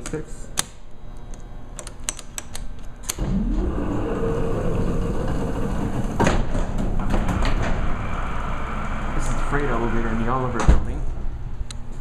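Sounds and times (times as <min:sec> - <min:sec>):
elevator machinery humming: 0:01.3 - 0:12.0
elevator machinery clunk: 0:03.1 - 0:11.0.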